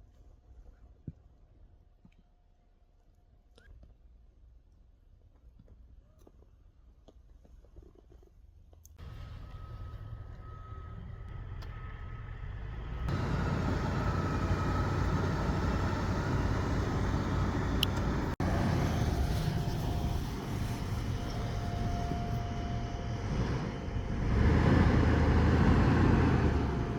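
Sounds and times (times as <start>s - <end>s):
vehicle engine rumbling: 9.0s - 26.9s.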